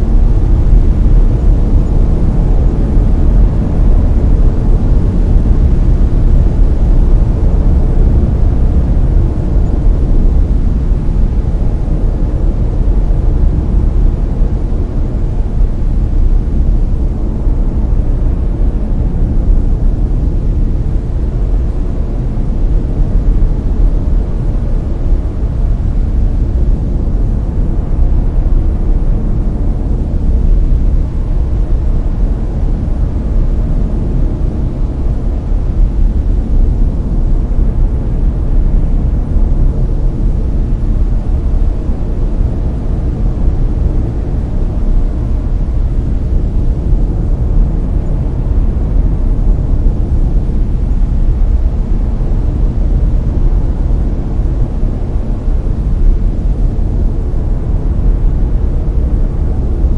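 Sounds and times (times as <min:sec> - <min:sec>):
brown noise rumbling hiss: 0:00.0 - 0:59.9.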